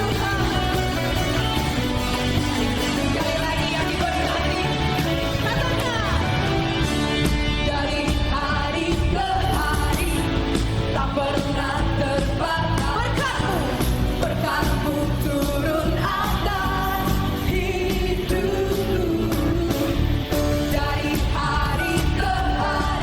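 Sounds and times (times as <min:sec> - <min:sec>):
person singing: 0:00.0 - 0:01.9, 0:02.8 - 0:23.0
pop-rock band playing: 0:00.0 - 0:23.0.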